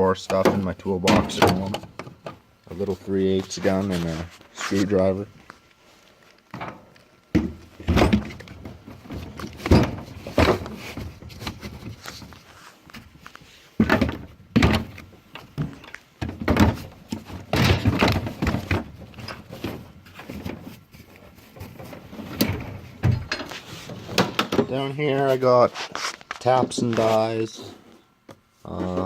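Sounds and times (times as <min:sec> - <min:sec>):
metal drawers shutting and opening: 0:00.0 - 0:02.4, 0:06.6 - 0:11.0, 0:13.8 - 0:20.5, 0:22.0 - 0:24.9
tools clattering in drawers: 0:15.6 - 0:20.6.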